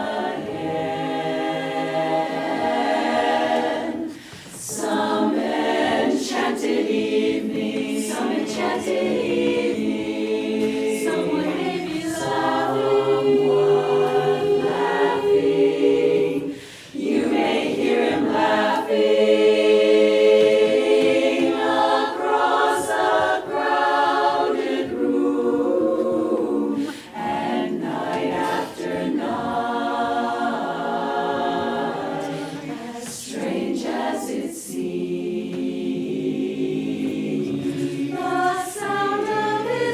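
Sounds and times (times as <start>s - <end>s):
chorus singing in harmony: 0.0s - 39.9s.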